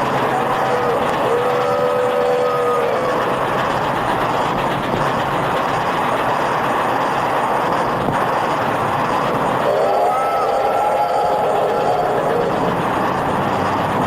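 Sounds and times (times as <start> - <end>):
train whistle chord: 0.0 - 3.2, 9.6 - 12.8
rushing noise of running train: 0.0 - 14.0.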